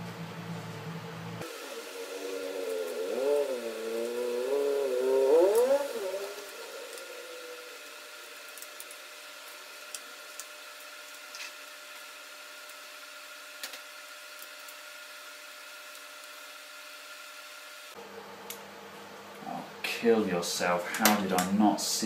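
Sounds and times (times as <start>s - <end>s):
faint hum: 0.0s - 12.8s
background hiss: 1.4s - 12.8s, 17.9s - 22.0s.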